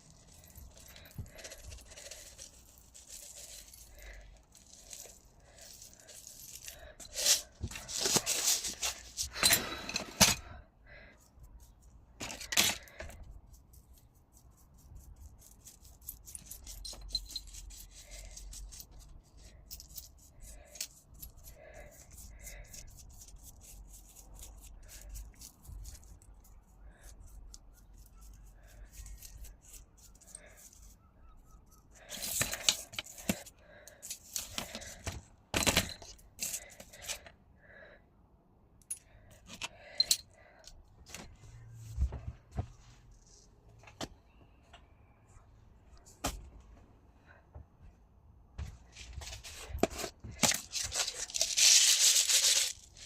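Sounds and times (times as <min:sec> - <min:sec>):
glass pieces clinking and scraping: 0:00.0 - 0:10.5, 0:15.4 - 0:26.5, 0:28.0 - 0:35.0, 0:49.6 - 0:53.0.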